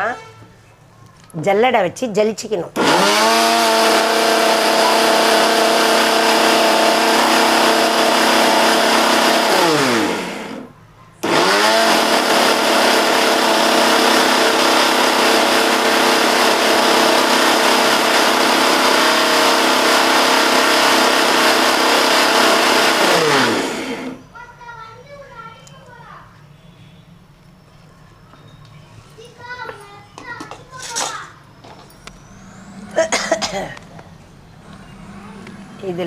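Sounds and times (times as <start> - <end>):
mixer grinder motor whining: 2.8 - 24.2, 33.8 - 36.0.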